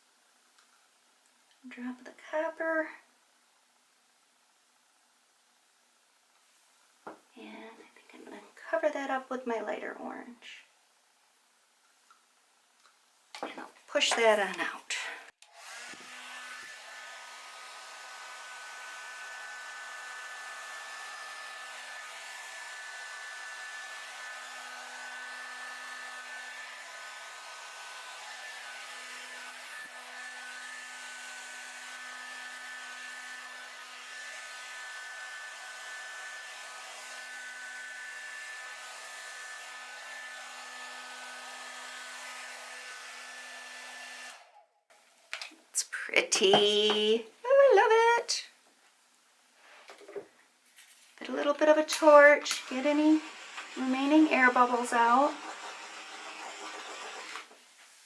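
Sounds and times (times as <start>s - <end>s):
hair dryer running: 15.5s - 38.9s, 39.5s - 44.5s, 52.0s - 57.6s.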